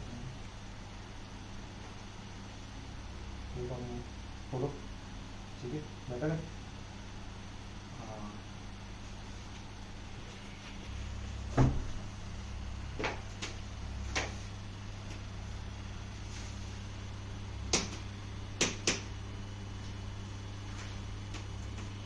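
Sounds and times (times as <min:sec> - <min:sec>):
steady low hum: 0:00.0 - 0:22.0
sharp clicks and knocks: 0:17.7 - 0:19.1.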